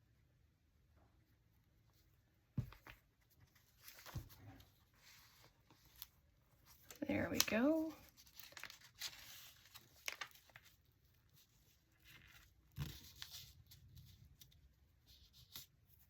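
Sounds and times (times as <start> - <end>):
paper rustling and tapping: 2.6 - 4.6, 6.9 - 10.7.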